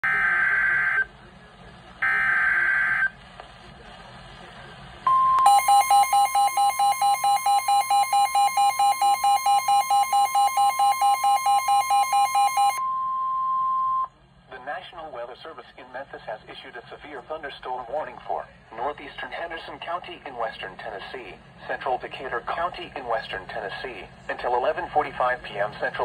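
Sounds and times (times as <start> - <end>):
steady warning alarm tone: 0.0 - 1.1, 2.0 - 3.1, 5.1 - 14.1
pulsing electronic beep: 5.1 - 14.1.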